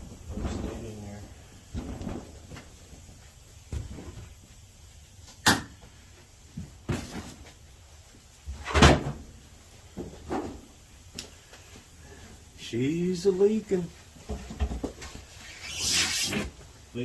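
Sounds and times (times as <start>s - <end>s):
knocks and clunks of handling: 14.2s - 15.2s.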